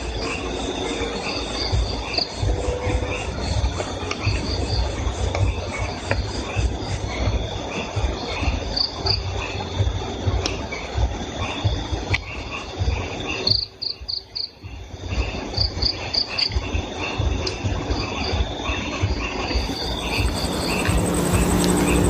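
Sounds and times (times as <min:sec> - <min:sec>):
low uneven rumble: 0:00.0 - 0:13.4, 0:16.6 - 0:22.0
crickets chirping: 0:00.0 - 0:22.0
high insect trill: 0:19.5 - 0:22.0.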